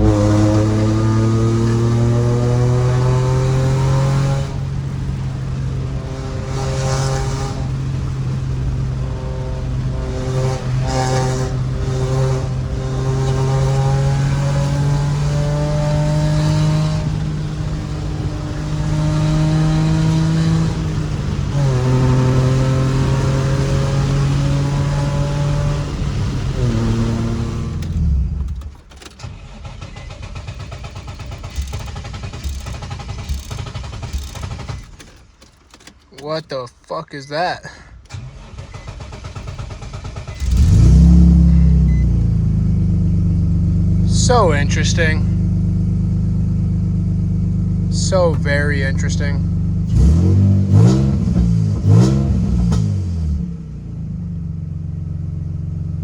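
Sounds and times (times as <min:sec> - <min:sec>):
car engine idling: 0:00.0 - 0:56.0
car engine revving: 0:00.0 - 0:56.0
car engine fast idle: 0:27.5 - 0:36.0, 0:37.9 - 0:49.9.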